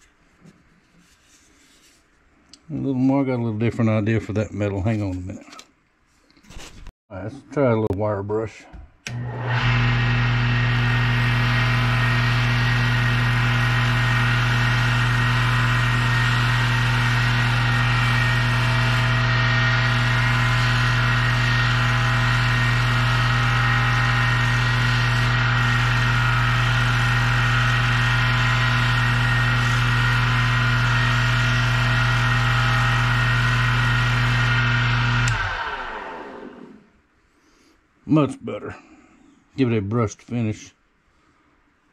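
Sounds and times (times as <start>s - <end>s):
wire brush wheel scouring metal: 10.7s - 35.5s.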